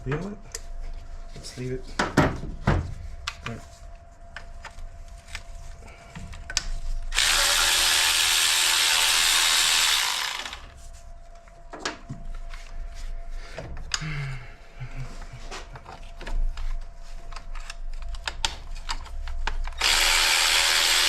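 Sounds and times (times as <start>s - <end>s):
power tool running: 7.1s - 10.8s, 19.8s - 21.0s.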